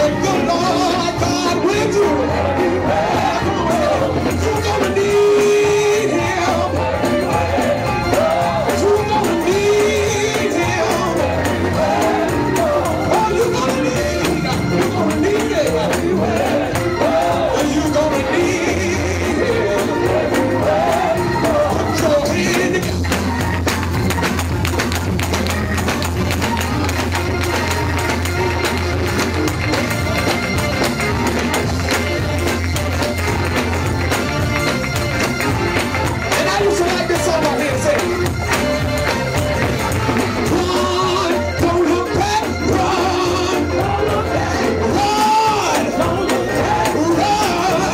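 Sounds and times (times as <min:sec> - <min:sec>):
person singing: 0:00.0 - 0:23.5, 0:40.4 - 0:47.9
bass line: 0:00.0 - 0:47.9
gospel band playing: 0:00.0 - 0:47.9
quick percussion: 0:00.0 - 0:47.9.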